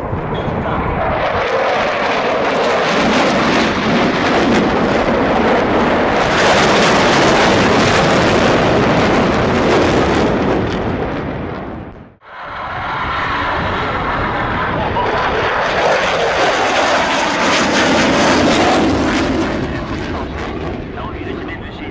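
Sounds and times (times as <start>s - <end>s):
jet aircraft engine roar: 0.0s - 21.9s.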